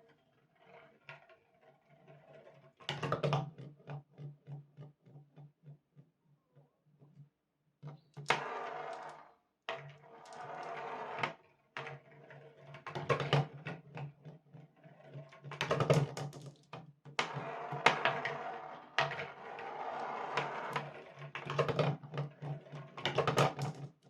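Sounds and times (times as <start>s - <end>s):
marbles rolling rattle: 8.3s - 9.2s, 10.2s - 11.0s.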